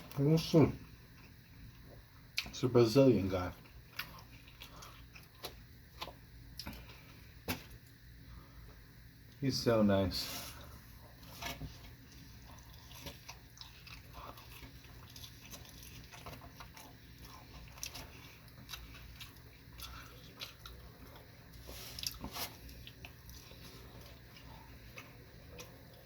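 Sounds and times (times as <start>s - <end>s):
person chewing with mouth clicks: 3.6s - 7.1s, 11.8s - 26.0s.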